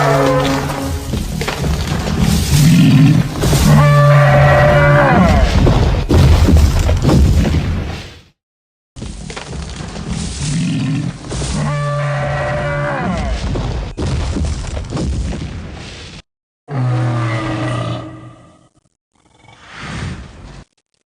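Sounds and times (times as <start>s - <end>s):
deep bellowing creature calls: 2.5s - 5.7s, 16.7s - 18.7s.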